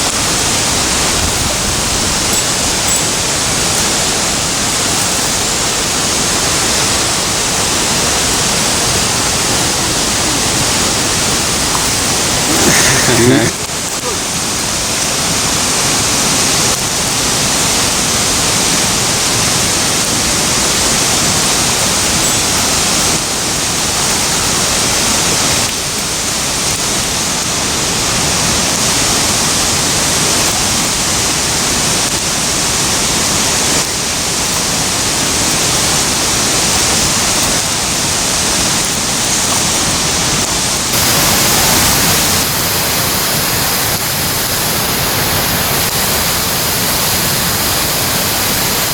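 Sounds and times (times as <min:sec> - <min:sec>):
rushing mountain stream: 0:00.0 - 0:48.9.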